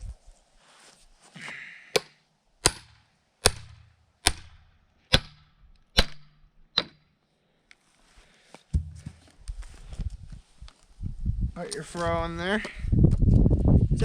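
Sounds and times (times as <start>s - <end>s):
hand tool splitting log: 2.0s - 4.5s.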